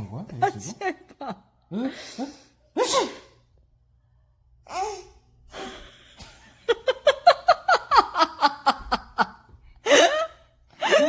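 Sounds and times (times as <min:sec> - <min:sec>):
person laughing: 0:05.6 - 0:11.0.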